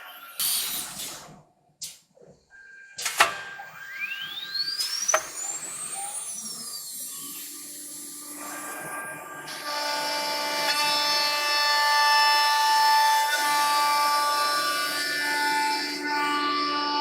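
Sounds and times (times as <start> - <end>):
router spindle whining cutting wood: 3.6 - 17.0.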